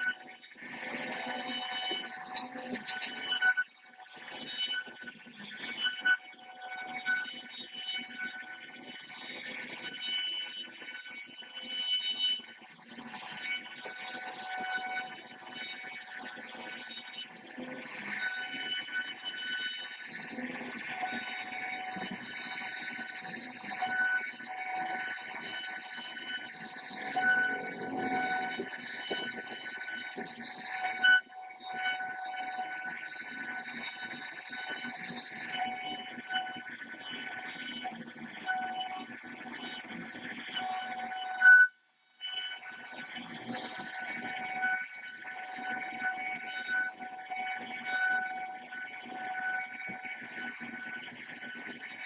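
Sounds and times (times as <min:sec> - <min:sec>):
router spindle high whine: 0:00.0 - 0:41.6, 0:42.2 - 0:52.0
router spindle whining: 0:27.1 - 0:31.1.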